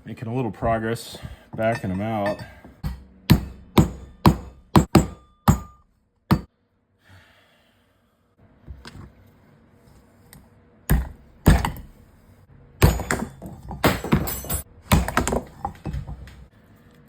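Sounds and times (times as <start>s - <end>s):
clanking with metallic ring: 1.6s - 4.3s.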